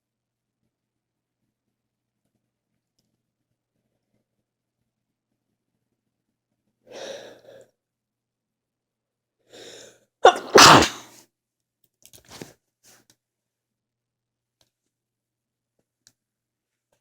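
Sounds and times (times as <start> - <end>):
quiet breathy sounds: 6.9 - 7.8
person sneezing: 10.2 - 11.1.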